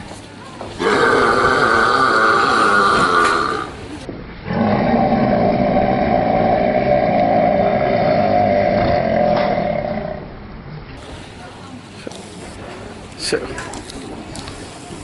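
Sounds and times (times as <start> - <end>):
person belching: 0.8 - 3.8, 4.5 - 10.3.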